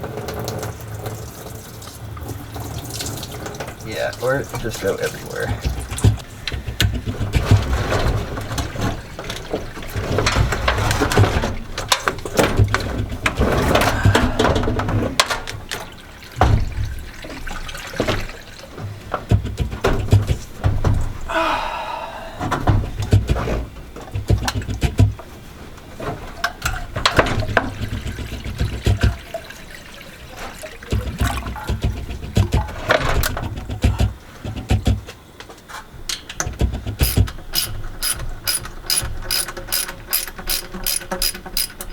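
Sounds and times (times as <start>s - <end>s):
coolant gushing and splashing: 0.0s - 21.3s, 23.6s - 34.3s
clanks of tools on engine: 35.7s - 41.9s.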